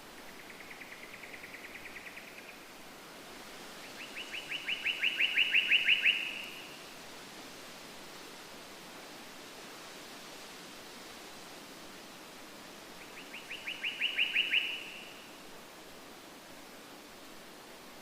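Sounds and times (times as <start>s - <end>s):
steady hiss: 0.0s - 18.0s
songbird trilling: 4.0s - 6.7s, 13.3s - 15.1s.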